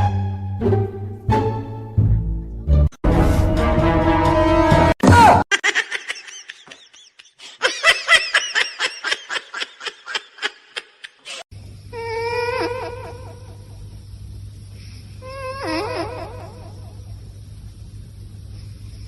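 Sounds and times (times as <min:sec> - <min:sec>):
laughter in quick bursts: 0:05.5 - 0:11.5.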